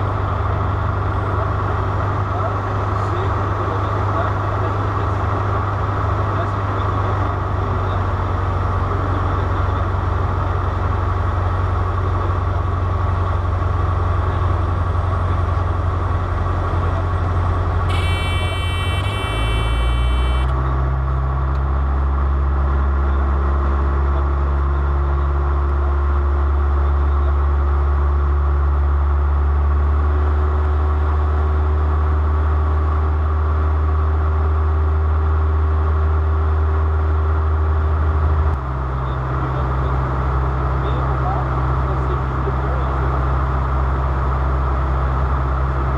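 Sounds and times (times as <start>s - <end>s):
aircraft engines droning: 17.9s - 20.5s
high electronic tone: 17.9s - 20.5s.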